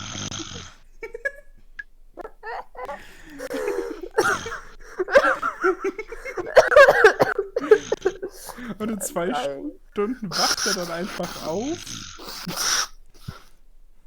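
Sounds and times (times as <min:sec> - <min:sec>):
people giggling and laughing: 0:00.2 - 0:01.6, 0:02.2 - 0:11.2.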